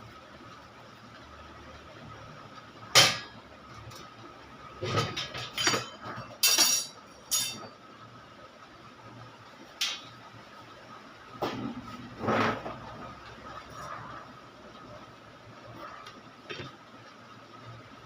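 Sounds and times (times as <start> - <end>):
metal tools clinking and knocking: 5.4 - 7.7.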